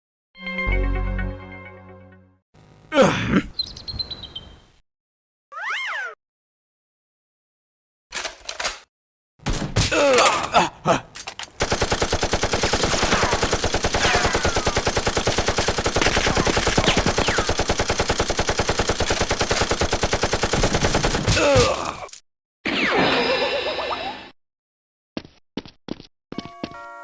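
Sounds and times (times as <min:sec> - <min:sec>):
men crying out and groaning: 0:02.9 - 0:03.5, 0:09.7 - 0:11.6
machine-gun fire: 0:11.2 - 0:21.2.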